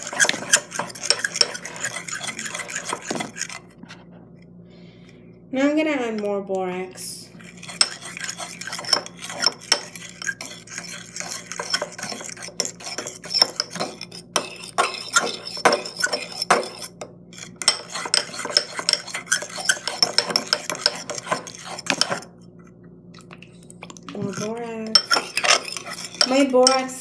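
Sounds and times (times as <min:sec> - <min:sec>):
spoon scraping a bowl: 0:00.0 - 0:03.7, 0:07.3 - 0:22.3, 0:24.1 - 0:27.0.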